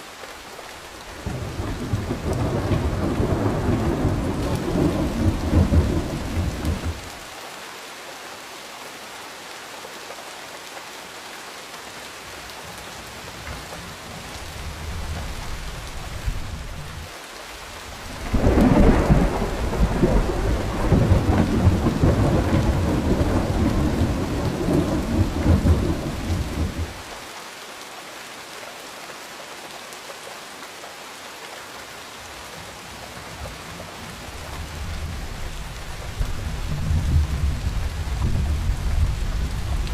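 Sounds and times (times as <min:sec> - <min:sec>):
steady rain falling: 0:00.0 - 0:39.9
thunder rumbling: 0:01.2 - 0:07.2, 0:18.1 - 0:27.2, 0:34.4 - 0:39.9.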